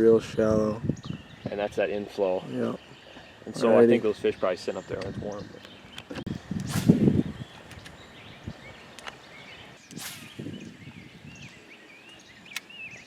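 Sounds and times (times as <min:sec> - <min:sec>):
small birds chirping: 0:00.0 - 0:13.0
brief swish: 0:06.7 - 0:07.1, 0:09.9 - 0:10.7.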